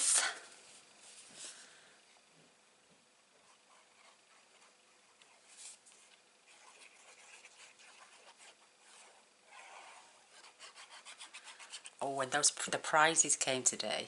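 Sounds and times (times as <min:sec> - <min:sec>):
card stock scratching and rubbing: 0:03.4 - 0:12.0.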